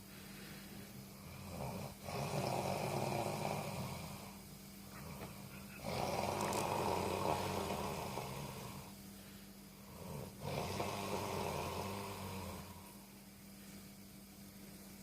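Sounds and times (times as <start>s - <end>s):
person snoring: 1.1s - 9.0s, 9.7s - 13.1s.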